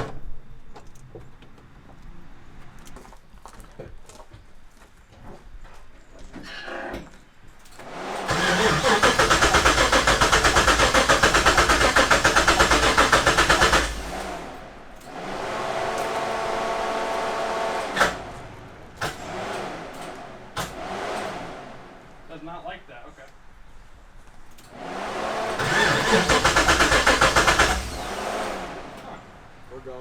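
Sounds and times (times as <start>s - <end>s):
engine cranking by starter: 7.6s - 22.3s, 24.5s - 30.0s.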